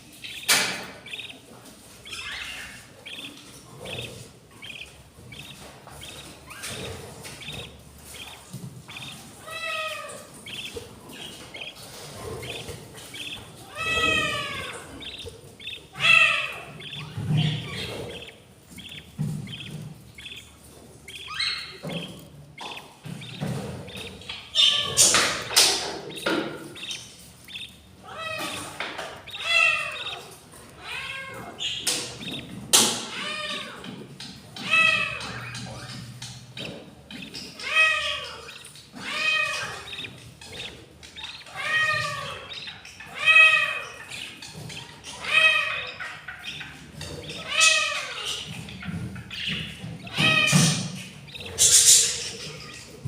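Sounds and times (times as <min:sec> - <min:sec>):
budgerigar chicks begging: 0:00.0 - 0:53.0
knocks and scrapes: 0:17.0 - 0:21.0.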